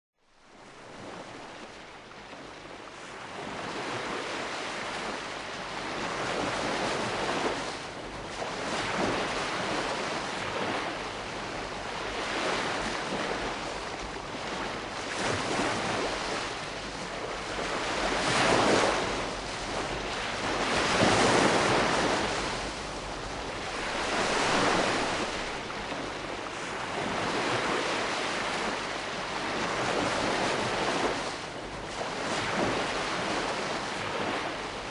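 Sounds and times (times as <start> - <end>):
gentle waves on the shore: 0.2 - 34.9.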